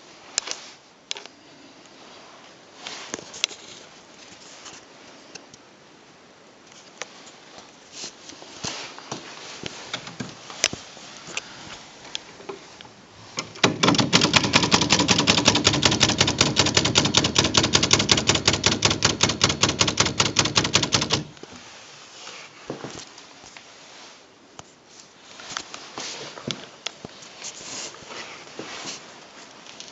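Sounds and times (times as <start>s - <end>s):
manual typewriter typing: 13.4s - 21.4s.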